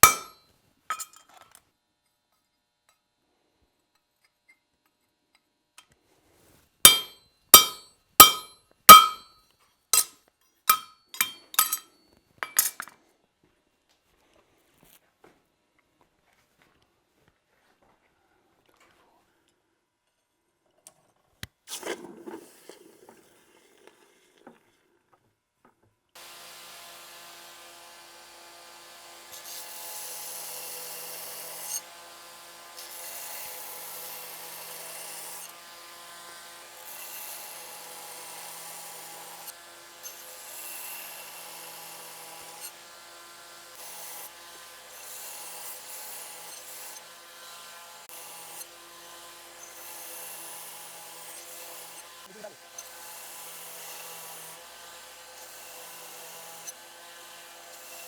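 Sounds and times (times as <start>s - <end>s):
electric grinder grinding blade: 26.2s - 58.0s.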